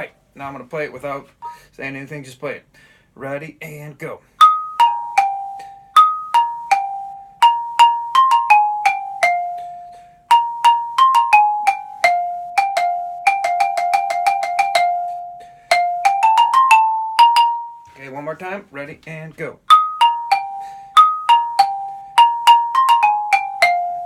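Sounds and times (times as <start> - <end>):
xylophone played with mallets: 4.4 - 18.2, 19.7 - 24.0.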